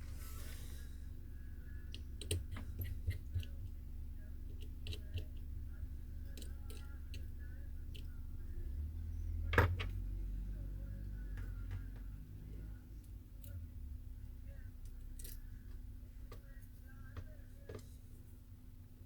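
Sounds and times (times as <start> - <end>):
steady low hum: 0.0 - 19.0
small tools clicking on phone parts: 1.9 - 3.8, 4.5 - 5.5, 15.2 - 15.4.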